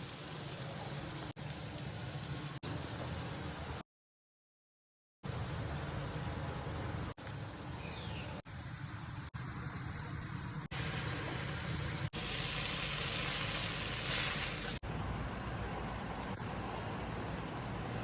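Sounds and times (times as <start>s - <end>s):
street traffic hum and hiss: 5.3s - 18.0s.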